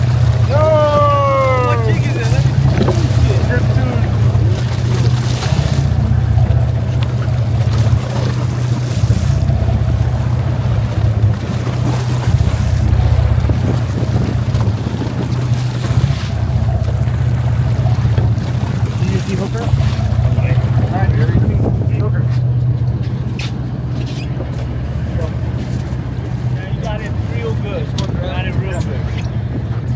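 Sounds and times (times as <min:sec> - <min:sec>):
wind noise on microphone: 0:00.0 - 0:19.2, 0:19.8 - 0:22.3, 0:27.6 - 0:29.9
boat engine droning: 0:00.0 - 0:29.9.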